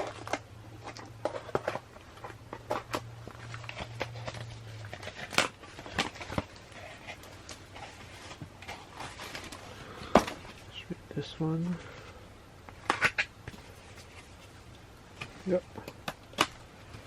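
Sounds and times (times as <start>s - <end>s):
packaging crinkling: 0.0s - 10.8s
faint steady hum: 0.0s - 17.0s
packaging snapping: 12.7s - 13.6s, 15.1s - 17.0s.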